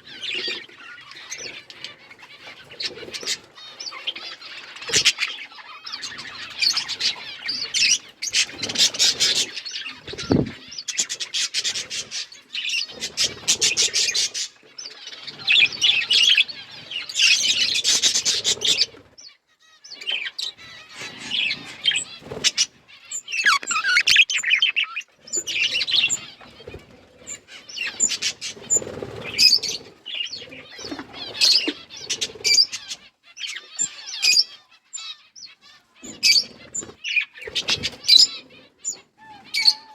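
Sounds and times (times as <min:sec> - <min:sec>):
budgerigars chirping and chattering: 0:00.0 - 0:39.9.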